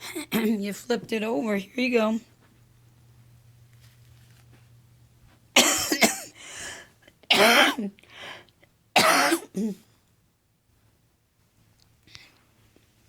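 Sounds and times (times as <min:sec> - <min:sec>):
woman coughing: 0:00.0 - 0:00.7, 0:05.6 - 0:06.4, 0:07.3 - 0:08.0, 0:09.0 - 0:09.9.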